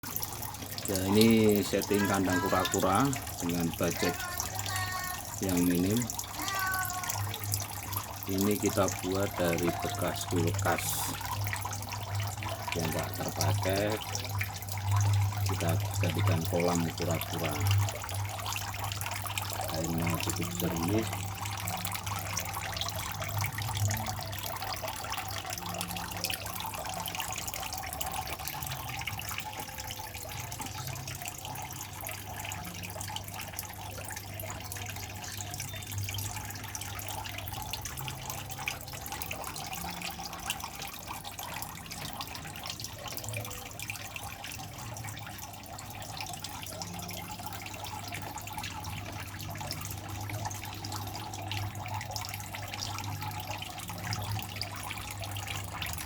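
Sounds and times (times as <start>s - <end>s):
water trickling and splashing: 0.0s - 56.0s.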